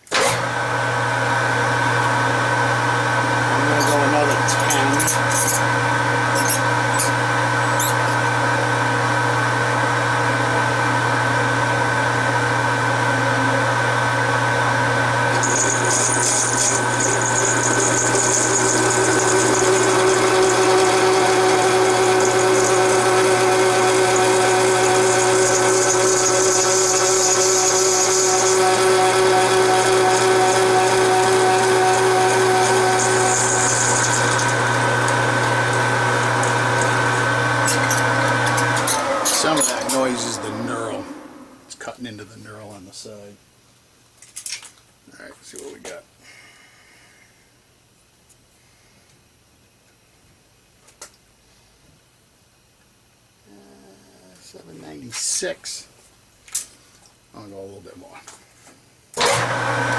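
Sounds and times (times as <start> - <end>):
metal lathe motor humming: 0.1 - 41.7, 59.2 - 59.9
cutting tool hissing on metal: 3.5 - 8.5, 15.3 - 41.1.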